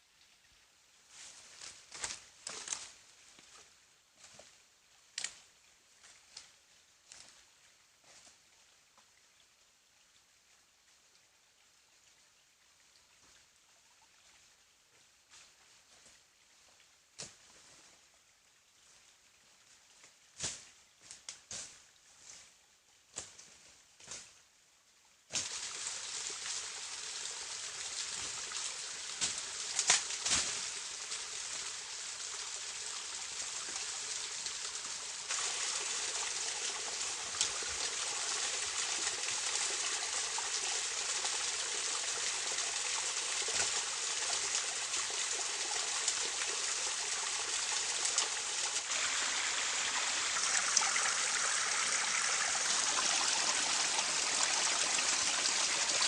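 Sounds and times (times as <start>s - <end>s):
running water: 25.2s - 56.0s.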